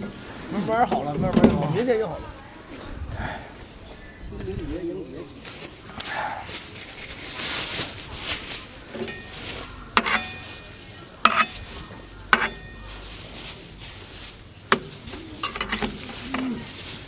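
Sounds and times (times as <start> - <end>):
rustling hiss: 5.4 - 17.0.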